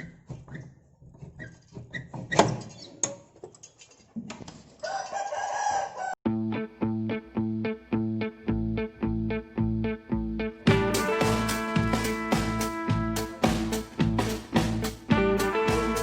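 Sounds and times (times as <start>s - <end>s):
rooster crowing: 4.8s - 6.2s
music with plucked guitar beat: 6.3s - 16.0s.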